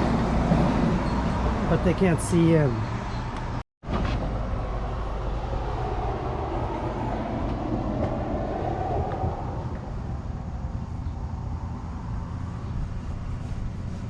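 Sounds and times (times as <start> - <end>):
low mechanical rumble: 4.1 - 14.0.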